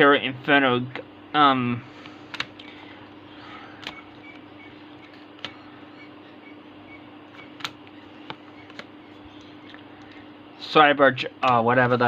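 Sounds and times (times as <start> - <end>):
steady low hum: 0.0 - 12.0
cards clicking and tapping: 2.0 - 2.7, 3.8 - 4.0, 7.4 - 10.2.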